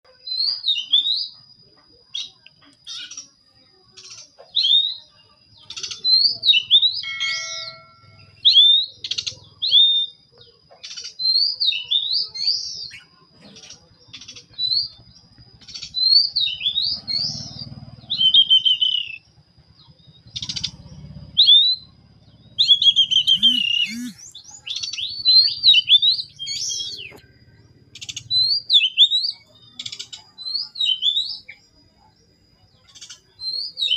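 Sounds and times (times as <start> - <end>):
songbirds chirping: 0.1 - 33.9
faint steady high tone: 6.3 - 9.1, 23.0 - 25.6.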